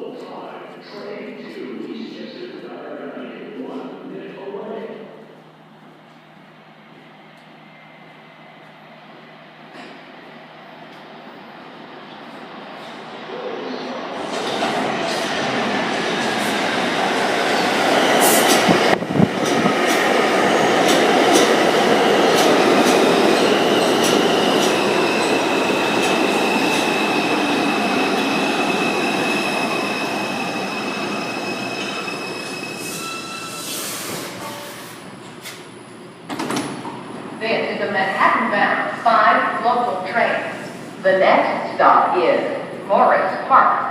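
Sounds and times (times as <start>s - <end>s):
subway train rumbling: 0.0s - 43.9s
high wheel squeal: 28.7s - 34.8s.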